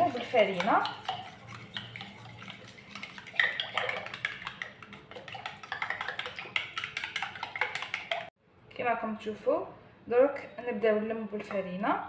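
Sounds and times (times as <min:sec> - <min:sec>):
spoon scraping against a bowl: 0:00.0 - 0:08.3.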